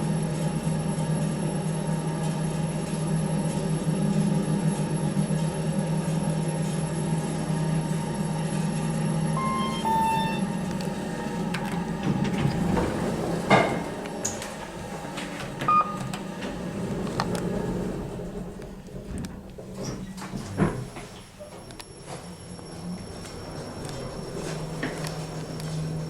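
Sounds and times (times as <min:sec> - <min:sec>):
lift car humming: 0:07.3 - 0:19.9, 0:22.7 - 0:26.0
short beep: 0:09.4 - 0:10.6, 0:15.7 - 0:16.0
electronic chime tones: 0:09.4 - 0:10.7.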